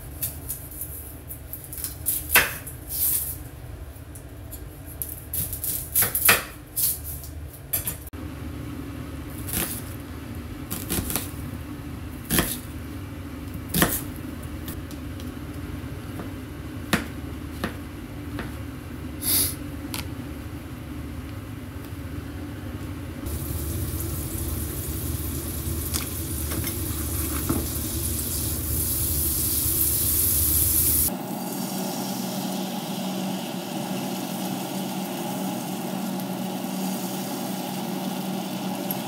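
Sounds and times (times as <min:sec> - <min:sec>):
steady low hum: 0:08.2 - 0:38.8.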